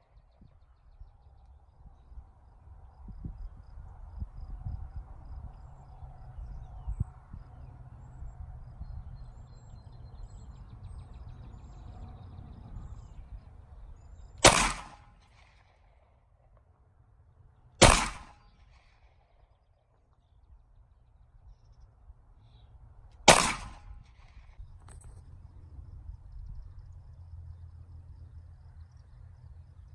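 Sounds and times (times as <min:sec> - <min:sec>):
steady low hum: 0:00.0 - 0:29.9
pistol shots: 0:14.4 - 0:15.7, 0:17.8 - 0:19.1, 0:23.3 - 0:24.4.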